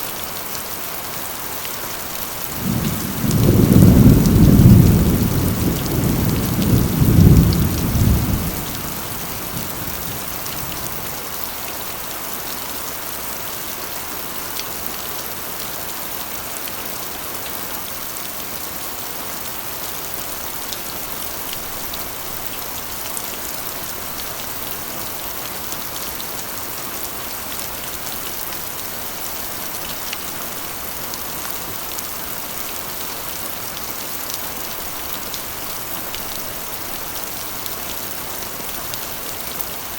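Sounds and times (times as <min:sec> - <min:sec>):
heavy rain on a metal roof: 0:00.0 - 0:39.9
thunder rumble: 0:02.5 - 0:10.5.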